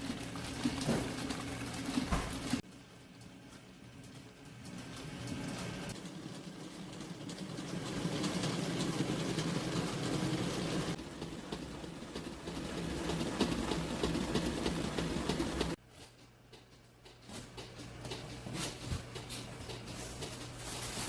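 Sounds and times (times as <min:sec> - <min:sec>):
electric mixer running: 0:05.5 - 0:15.8.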